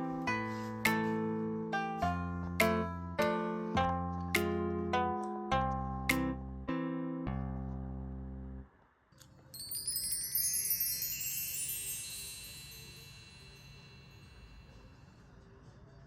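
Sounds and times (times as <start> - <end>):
plucked-string music: 0.0 - 8.0
metal chimes cascading: 9.5 - 15.0.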